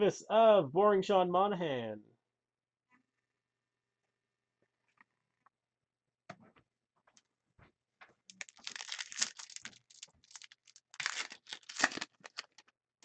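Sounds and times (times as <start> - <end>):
foil wrapper tearing and crinkling: 8.3 - 12.7.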